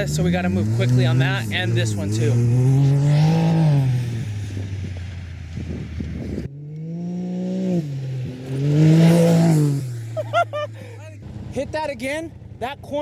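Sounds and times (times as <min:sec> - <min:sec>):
engine revving hard: 0:00.0 - 0:04.7, 0:06.5 - 0:11.6.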